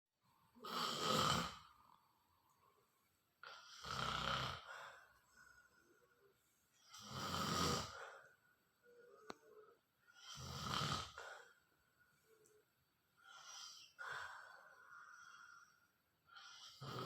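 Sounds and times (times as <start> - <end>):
person snoring: 0.6 - 1.8, 3.4 - 4.8, 6.9 - 8.1, 10.1 - 11.5, 16.4 - 17.0.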